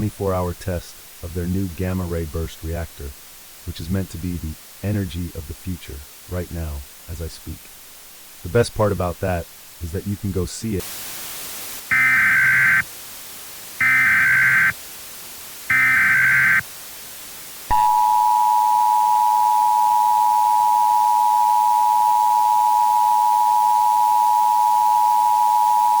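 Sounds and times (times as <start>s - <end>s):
digital data bursts: 11.9s - 12.8s, 13.8s - 14.8s, 15.7s - 16.6s
two-tone attention signal: 11.9s - 12.8s, 13.8s - 14.7s, 15.7s - 16.6s, 17.7s - 26.0s.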